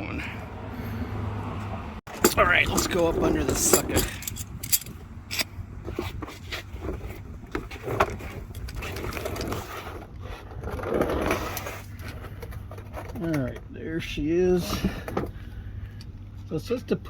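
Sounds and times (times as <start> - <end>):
clicks and knocks of parts: 2.1 - 5.6.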